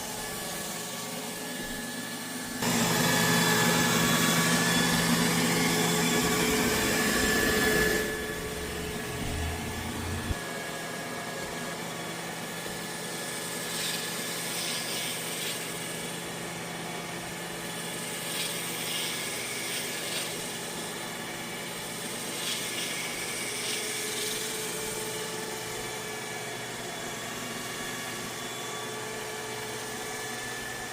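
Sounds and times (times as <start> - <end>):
robot vacuum whirring: 0.1 - 10.4
low rumble: 8.1 - 10.4.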